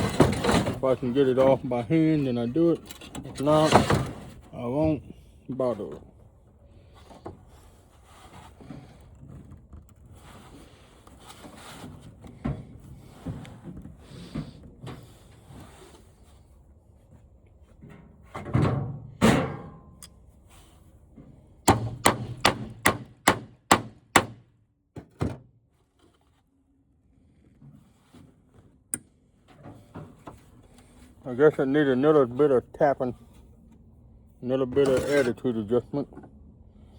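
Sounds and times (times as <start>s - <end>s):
rustling of parts: 0.0s - 4.6s.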